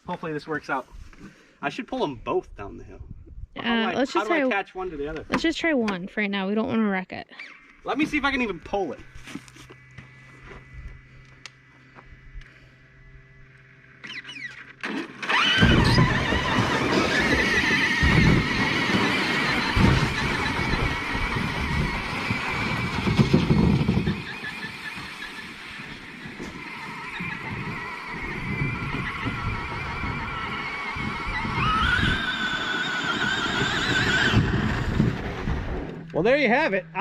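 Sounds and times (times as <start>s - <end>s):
toy car motor whining: 13.6s - 36.1s
plastic hull scraping on dirt: 14.1s - 36.2s.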